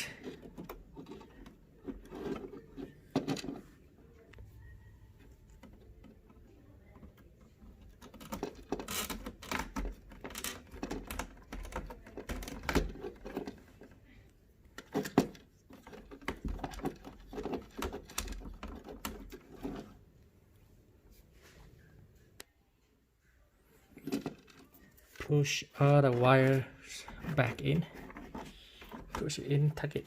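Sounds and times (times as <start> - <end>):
rustling of wires: 23.7 - 30.0.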